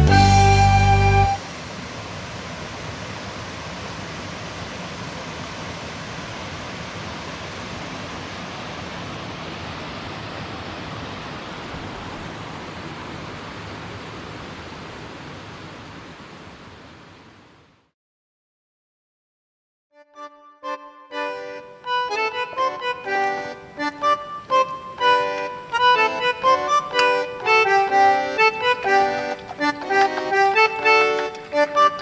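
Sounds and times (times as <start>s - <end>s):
river water rushing: 0.0s - 17.1s.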